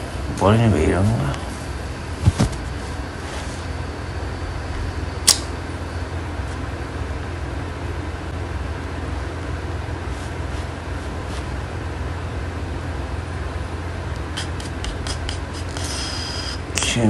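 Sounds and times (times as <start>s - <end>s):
low hum and hiss: 0.0s - 17.0s
sharp click: 5.2s - 5.6s.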